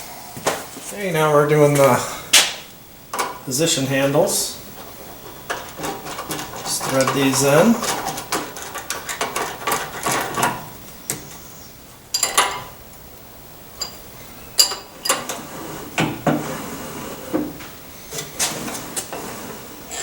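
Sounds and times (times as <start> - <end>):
metal handles clinking and tapping: 3.1 - 3.4, 4.8 - 11.4, 12.1 - 12.8, 13.8 - 16.4.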